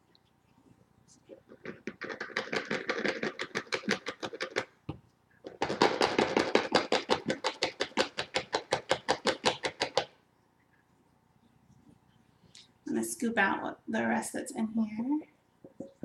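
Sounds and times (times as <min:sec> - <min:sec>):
rapid tapping on a container: 0:01.4 - 0:04.8, 0:05.4 - 0:10.2.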